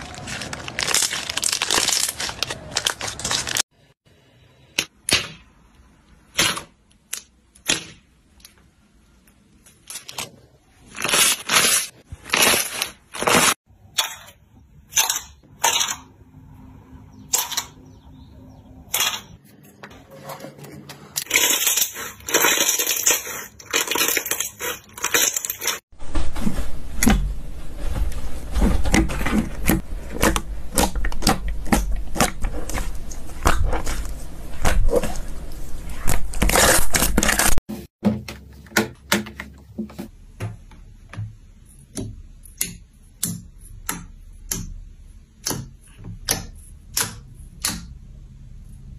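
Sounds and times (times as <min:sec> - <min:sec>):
slime popping and crackling: 0:00.0 - 0:03.7, 0:21.2 - 0:25.8, 0:28.9 - 0:35.3.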